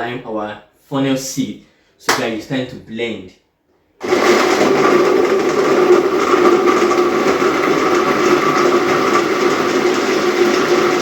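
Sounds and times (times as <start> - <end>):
electric blender running: 4.0 - 11.0.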